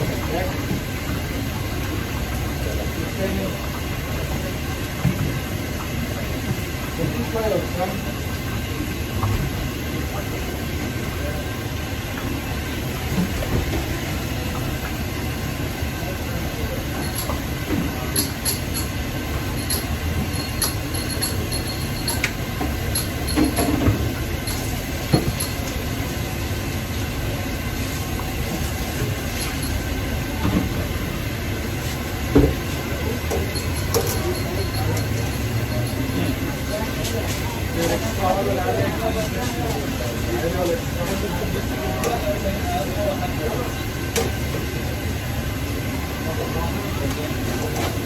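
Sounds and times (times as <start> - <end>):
faint voices: 0.0 - 48.0
metallic clinks and ticks: 17.0 - 17.4, 18.2 - 23.8, 25.3 - 25.8, 33.3 - 36.3.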